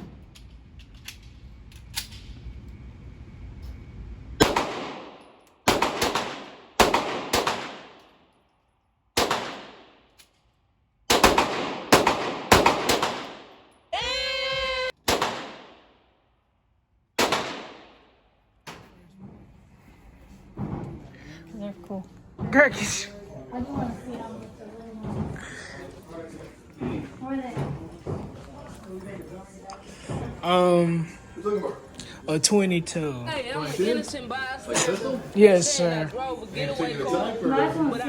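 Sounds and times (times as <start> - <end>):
gunshots: 4.4 - 8.0, 9.2 - 10.0, 11.1 - 13.7, 15.0 - 16.0, 17.2 - 18.9.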